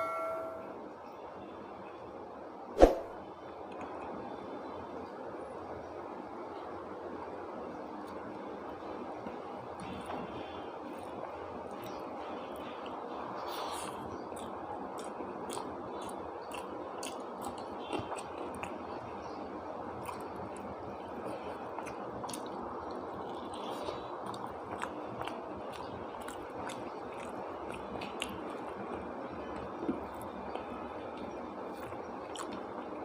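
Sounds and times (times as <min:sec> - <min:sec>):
person chewing and eating: 0:12.6 - 0:33.0.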